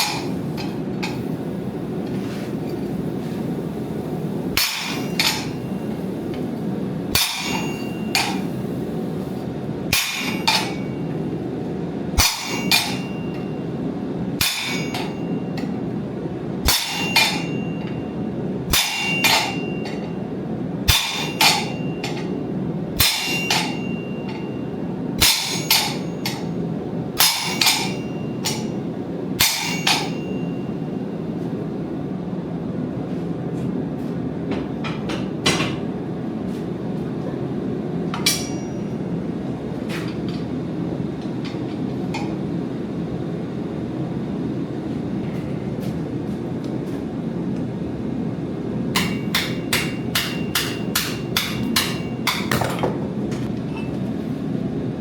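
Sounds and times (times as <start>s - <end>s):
hammer striking metal: 0.0s - 0.4s, 4.6s - 5.6s, 7.1s - 8.5s, 9.9s - 11.1s, 12.2s - 13.5s, 14.4s - 15.7s, 16.7s - 18.0s, 18.7s - 20.2s, 20.9s - 22.4s, 23.0s - 24.6s, 25.2s - 26.5s, 27.2s - 28.8s, 29.4s - 30.7s, 38.1s - 39.0s, 49.0s - 53.0s.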